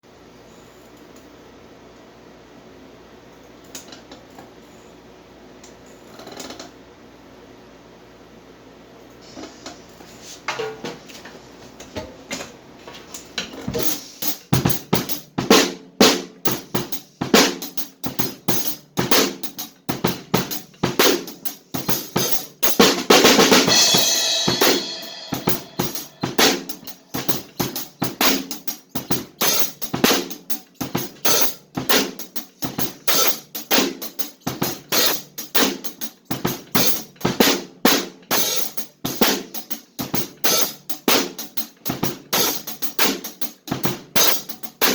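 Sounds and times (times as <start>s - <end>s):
drum kit playing a beat: 12.9s - 44.9s
cymbal wash: 23.6s - 28.6s.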